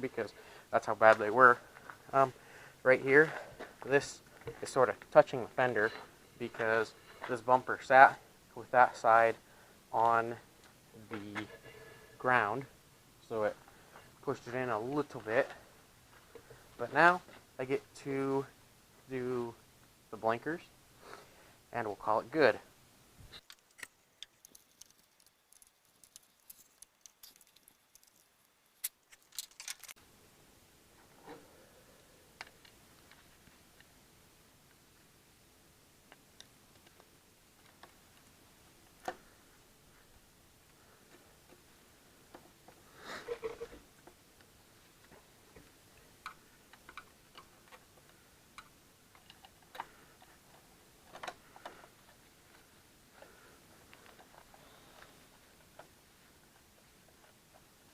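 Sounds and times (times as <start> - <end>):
small parts clicking: 23.4 - 30.0
small parts clicking and tapping: 23.4 - 30.0, 44.0 - 52.2.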